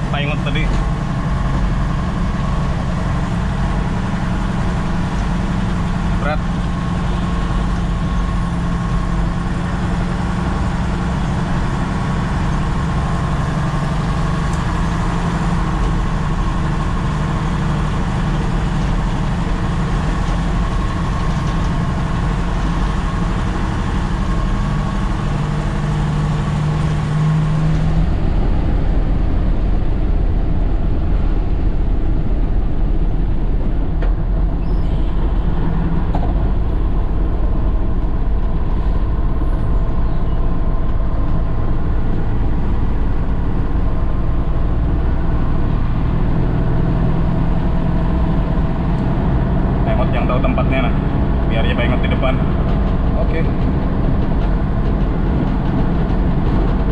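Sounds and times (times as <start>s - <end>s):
diesel engine running: 0.0s - 56.9s.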